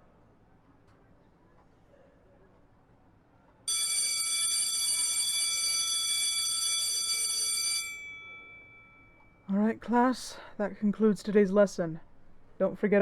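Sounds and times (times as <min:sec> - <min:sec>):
school bell ringing: 0:03.7 - 0:09.5.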